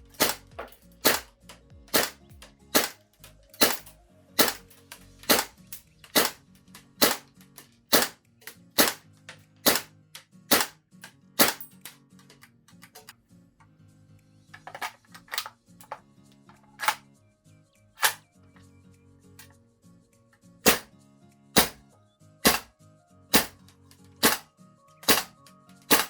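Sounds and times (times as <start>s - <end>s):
airsoft rifle shots: 0.0s - 1.3s, 1.9s - 3.0s, 3.6s - 6.4s, 7.0s - 7.3s, 7.9s - 9.0s, 9.6s - 9.9s, 10.5s - 10.8s, 11.4s - 11.7s, 20.7s - 20.9s, 21.6s - 21.8s, 22.4s - 22.7s, 23.3s - 23.6s, 24.2s - 24.4s, 25.0s - 26.0s.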